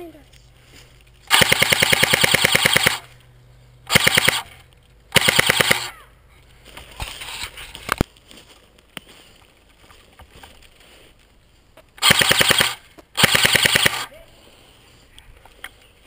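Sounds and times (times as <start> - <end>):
sharp clicks: 1.2 - 3.3, 3.9 - 5.9, 11.9 - 14.1
airsoft gun firing bursts: 1.3 - 3.1, 3.9 - 5.9, 12.0 - 14.1
rustling: 6.3 - 12.0.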